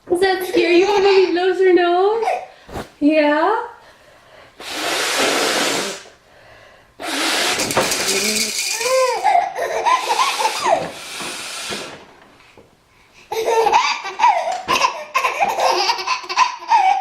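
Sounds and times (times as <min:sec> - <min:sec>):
baby laughing: 0:00.4 - 0:01.5, 0:08.1 - 0:10.9, 0:13.3 - 0:17.0.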